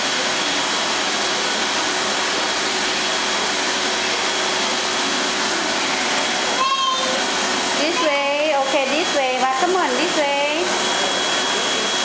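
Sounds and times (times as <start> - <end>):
vacuum cleaner running: 0.0 - 12.0
high voice calling out: 6.6 - 7.2.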